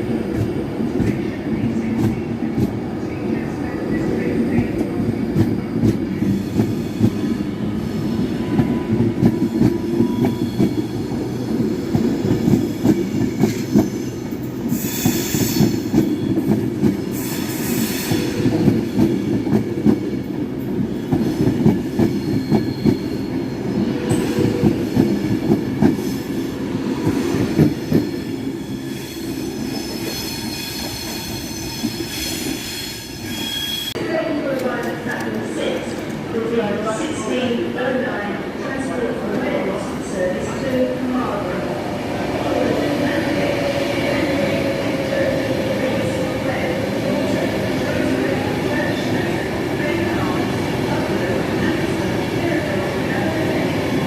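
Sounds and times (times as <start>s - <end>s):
high wheel squeals: 5.7s - 11.4s, 27.1s - 34.0s.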